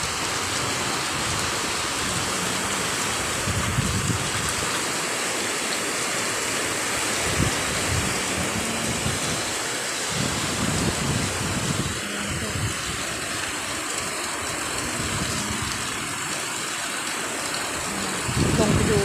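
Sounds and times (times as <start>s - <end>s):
wind gusts: 0.0s - 16.6s, 17.7s - 19.0s
heavy rain pouring: 0.0s - 19.0s.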